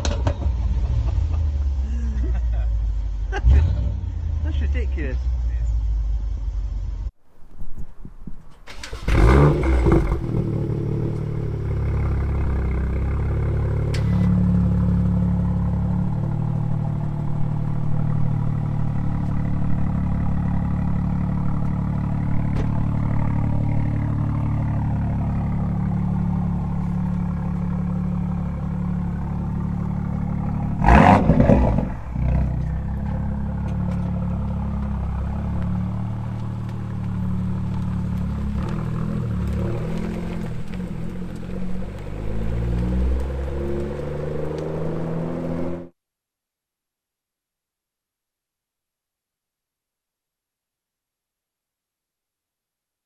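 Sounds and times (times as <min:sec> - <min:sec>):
car engine idling: 0:09.8 - 0:44.6.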